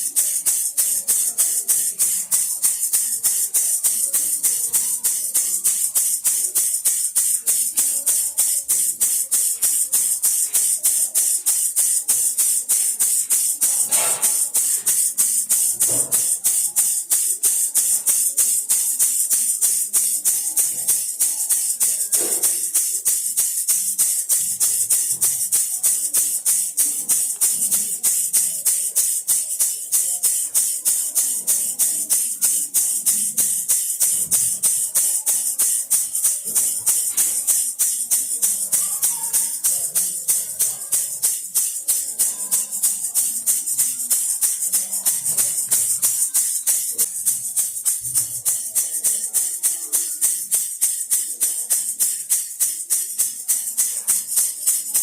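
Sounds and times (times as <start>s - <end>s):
baby rattle shaken: 0.0s - 55.0s.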